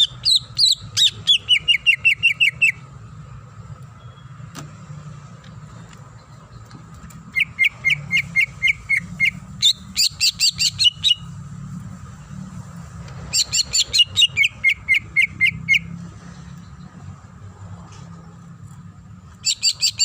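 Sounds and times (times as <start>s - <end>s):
bird chirping rapidly: 0.0s - 2.9s, 6.1s - 11.5s, 13.2s - 17.1s, 19.3s - 20.0s.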